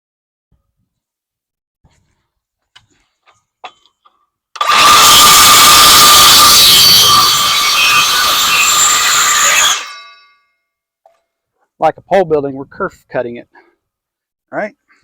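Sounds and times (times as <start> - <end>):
power saw cutting wood: 4.6 - 10.1.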